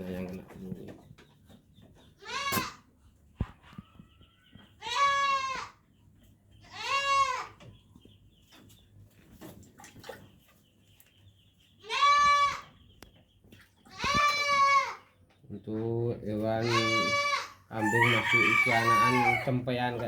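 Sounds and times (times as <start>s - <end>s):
goat kid bleating: 2.2s - 2.9s, 4.8s - 5.8s, 6.6s - 7.6s, 11.8s - 12.8s, 13.9s - 15.1s, 16.6s - 17.7s.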